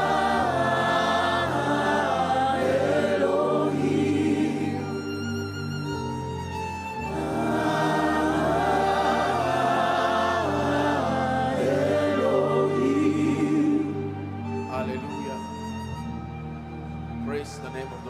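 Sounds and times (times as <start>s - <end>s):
choir singing: 0.0s - 5.9s, 7.0s - 15.4s.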